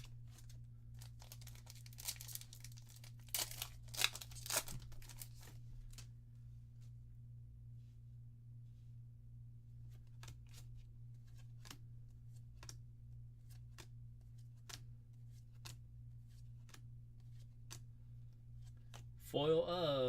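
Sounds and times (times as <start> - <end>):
low electrical hum: 0.0 - 20.0
trading cards being flipped: 0.2 - 6.1, 9.9 - 12.8, 13.4 - 17.9, 18.5 - 19.2.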